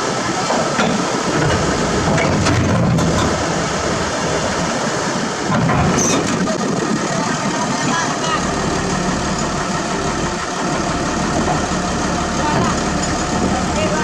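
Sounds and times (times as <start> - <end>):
heavy machinery rumbling: 0.0 - 14.0
sharp knocks and clanks: 0.5 - 4.5, 5.4 - 6.5.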